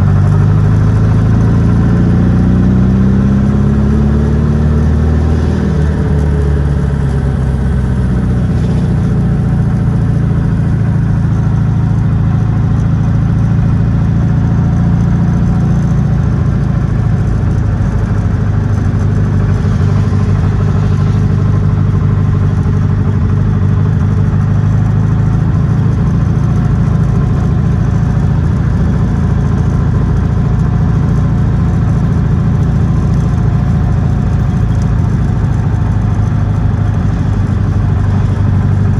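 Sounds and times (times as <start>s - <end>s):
car engine running: 0.0s - 38.9s.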